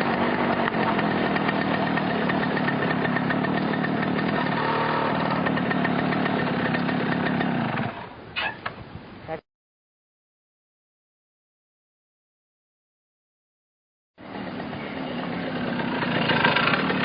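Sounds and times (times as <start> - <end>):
two-stroke engine running: 0.0 - 8.1, 14.2 - 17.0.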